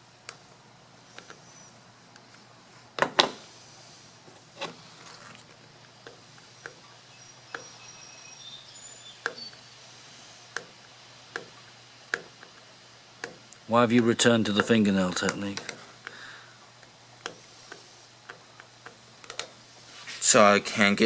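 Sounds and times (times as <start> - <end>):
faint bird chirps: 7.0 - 9.8.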